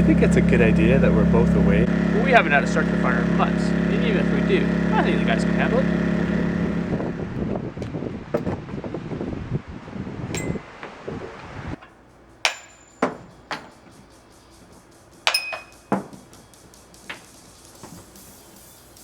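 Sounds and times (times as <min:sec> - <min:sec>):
rumbling noise: 0:00.0 - 0:11.8
glass clinking: 0:10.3 - 0:10.8, 0:12.4 - 0:13.9, 0:15.3 - 0:16.2.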